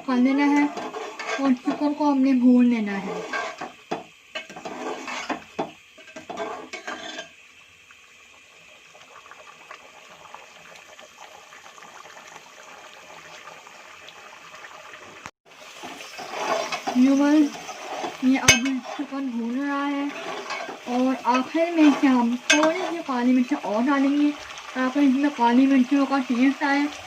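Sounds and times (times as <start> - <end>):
steady sizzle: 0.0 - 27.0
metal spatula scraping a pan: 0.5 - 1.9, 2.9 - 3.8, 4.4 - 7.4, 15.8 - 23.2.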